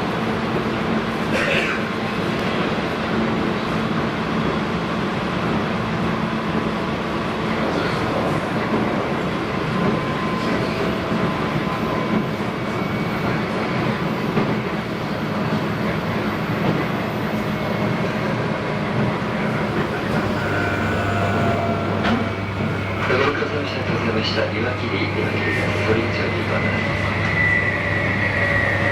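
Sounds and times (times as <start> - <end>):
train wheels rumbling on rail: 0.0 - 28.9
low motor hum: 19.4 - 23.2.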